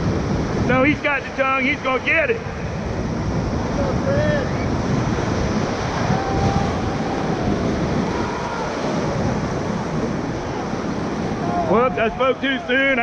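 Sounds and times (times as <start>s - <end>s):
whitewater rushing: 0.0s - 13.0s
wind buffeting microphone: 0.0s - 13.0s
distant shouting: 5.6s - 13.0s.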